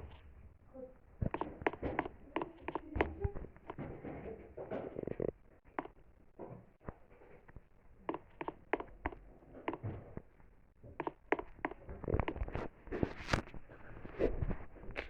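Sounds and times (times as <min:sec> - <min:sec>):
short taps and clicks: 0:11.0 - 0:12.4.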